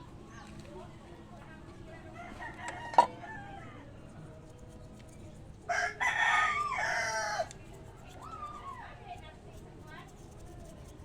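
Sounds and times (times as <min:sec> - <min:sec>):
rooster crowing: 0:02.2 - 0:03.9, 0:05.7 - 0:07.5.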